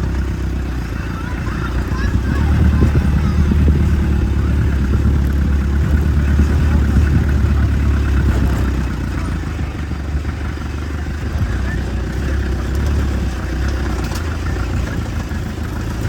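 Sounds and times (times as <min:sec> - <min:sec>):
clatter over rough ground: 0:00.0 - 0:16.0
vehicle engine rumbling: 0:00.0 - 0:16.0.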